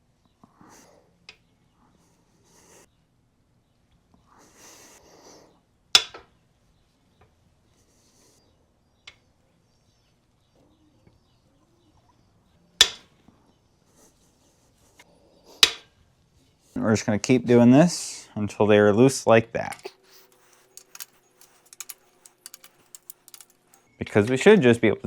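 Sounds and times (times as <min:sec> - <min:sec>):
faint wrench ticks: 0:20.3 - 0:23.9
metallic bolt snaps: 0:20.8 - 0:23.8.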